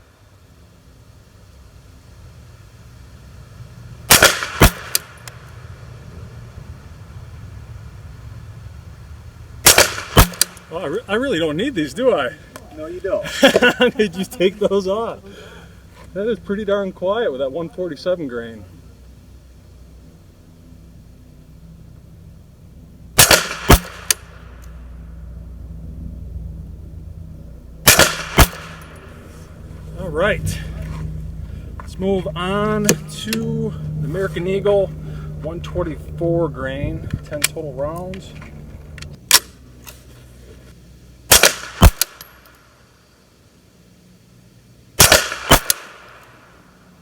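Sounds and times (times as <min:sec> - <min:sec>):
suppressed gunshots: 0:04.0 - 0:05.5, 0:09.6 - 0:10.7, 0:23.2 - 0:24.6, 0:27.8 - 0:29.2, 0:41.3 - 0:42.6, 0:45.0 - 0:46.5
sharp crack: 0:04.0 - 0:05.7, 0:09.6 - 0:11.0, 0:23.2 - 0:24.8, 0:27.8 - 0:29.2, 0:39.0 - 0:39.6, 0:41.3 - 0:42.8, 0:45.0 - 0:46.6.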